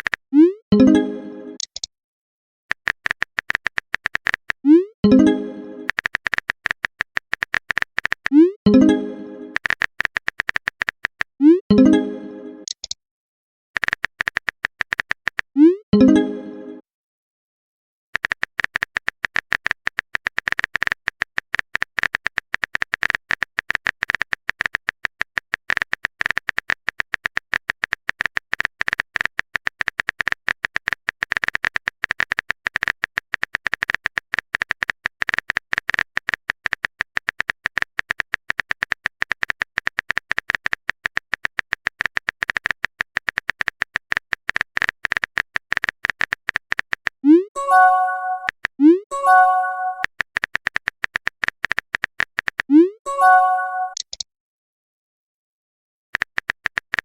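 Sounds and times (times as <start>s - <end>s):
keyboard clicks typing: 0.0s - 1.9s, 2.7s - 13.0s, 13.8s - 16.5s, 18.2s - 54.2s, 56.2s - 57.0s.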